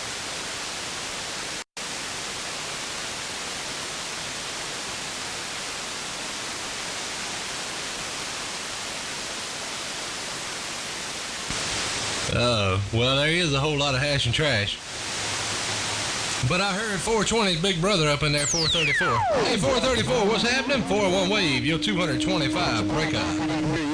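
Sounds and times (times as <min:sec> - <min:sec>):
radio static hiss: 0:11.5 - 0:23.9.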